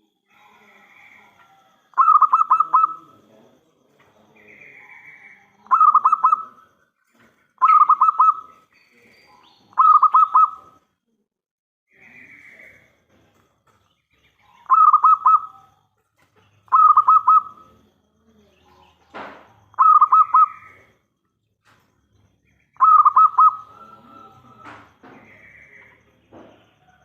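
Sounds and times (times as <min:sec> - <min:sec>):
dove cooing: 0:00.3 - 0:03.4, 0:04.0 - 0:06.8, 0:07.6 - 0:08.7, 0:09.3 - 0:10.8, 0:14.5 - 0:15.9, 0:16.6 - 0:17.9, 0:19.7 - 0:20.9, 0:22.8 - 0:27.0.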